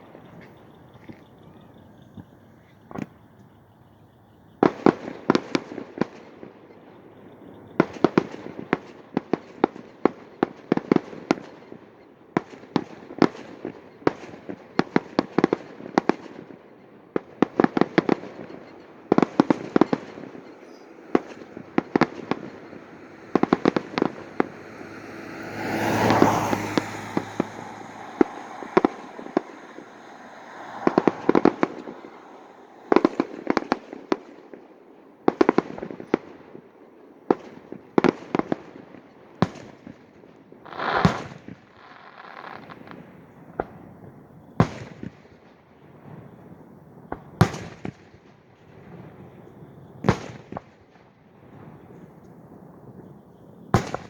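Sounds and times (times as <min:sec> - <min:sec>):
fireworks bangs and crackles: 0:00.0 - 0:54.0
loud rushing noise: 0:22.8 - 0:33.2, 0:40.7 - 0:41.3.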